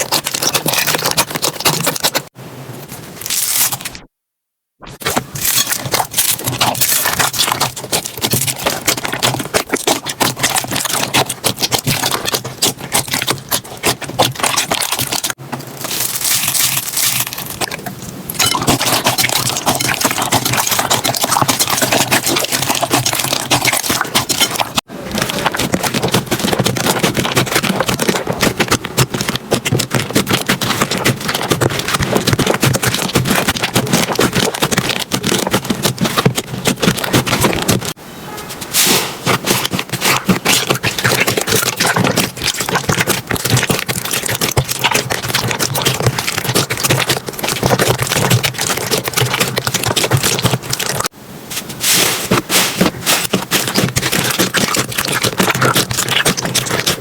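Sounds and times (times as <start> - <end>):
slime crackling and clicking: 39.3 - 51.1, 53.2 - 57.0.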